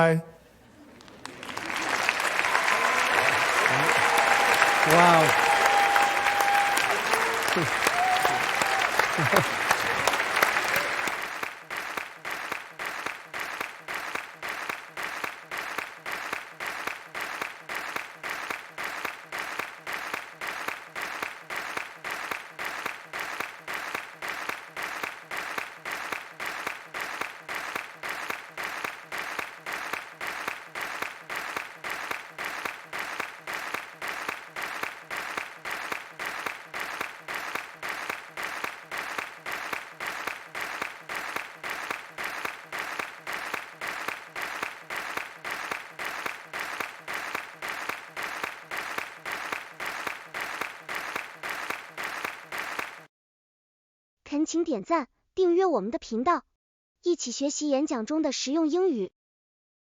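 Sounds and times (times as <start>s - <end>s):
audience applause: 0.8s - 53.1s.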